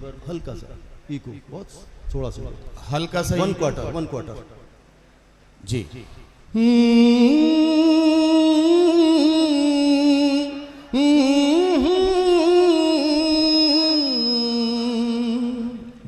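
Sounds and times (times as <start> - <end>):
man singing wordless notes: 6.5 - 16.0.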